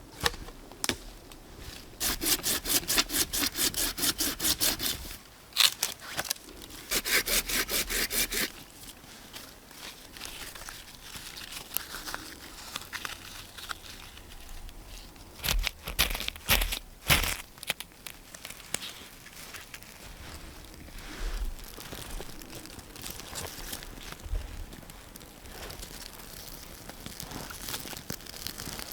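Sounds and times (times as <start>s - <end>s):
hand saw cutting wood: 2.0s - 5.2s, 6.8s - 8.6s.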